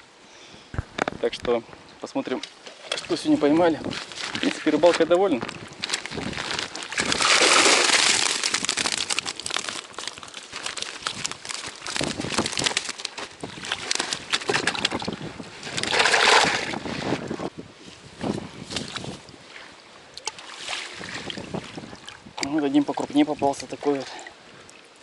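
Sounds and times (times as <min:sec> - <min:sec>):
crackling: 0:03.9 - 0:14.8
strong wind buffeting microphone: 0:05.2 - 0:09.1, 0:11.0 - 0:12.8, 0:13.4 - 0:19.5, 0:20.9 - 0:22.5.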